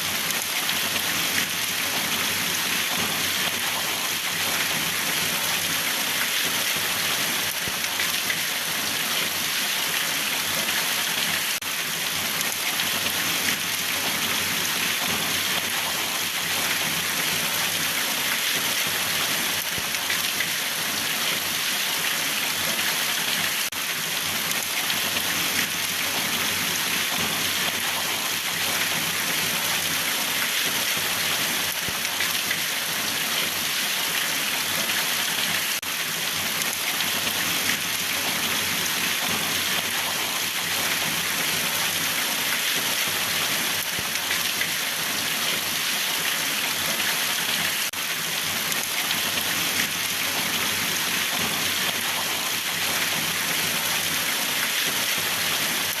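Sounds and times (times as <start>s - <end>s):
rain pattering on a surface: 0.1s - 56.0s.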